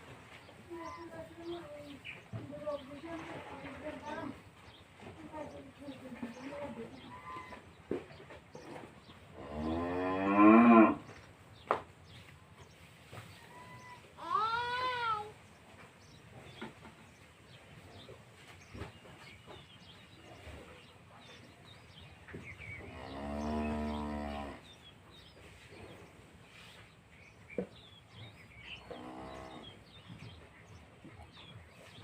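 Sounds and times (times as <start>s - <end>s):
small birds chirping: 0.0s - 32.0s
cows mooing: 9.4s - 11.1s, 22.9s - 24.6s, 28.8s - 29.8s.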